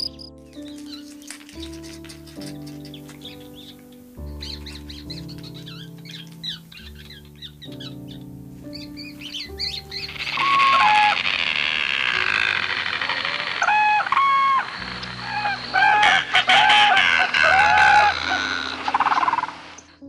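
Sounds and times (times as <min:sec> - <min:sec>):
hum of birds: 0:00.0 - 0:20.0
chickens crowing and squawking: 0:04.4 - 0:19.8.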